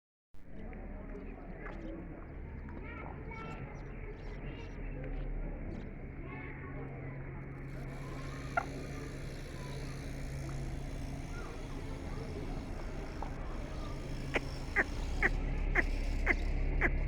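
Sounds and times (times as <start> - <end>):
steady low hum: 7.4 - 17.0
cranes calling: 7.7 - 17.0.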